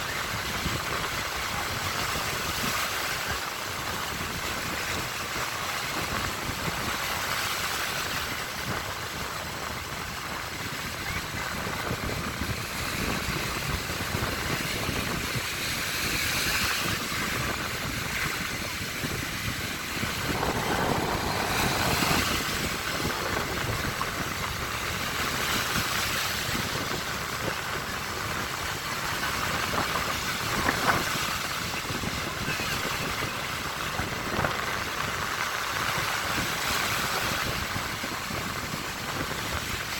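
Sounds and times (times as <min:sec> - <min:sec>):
waves washing onto shore: 0:16.8 - 0:28.7.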